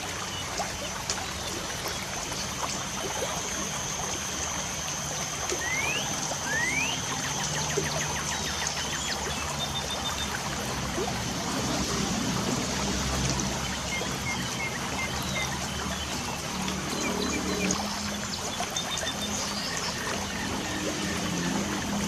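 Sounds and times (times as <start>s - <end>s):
water trickling from rain: 0.0s - 22.0s
birds chirping: 4.5s - 10.6s, 13.4s - 22.0s.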